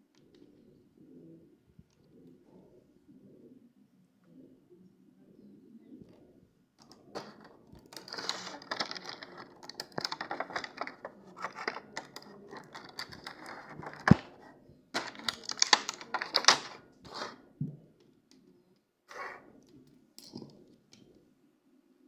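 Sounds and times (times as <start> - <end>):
packaging crackling: 6.8 - 14.4, 15.0 - 17.3.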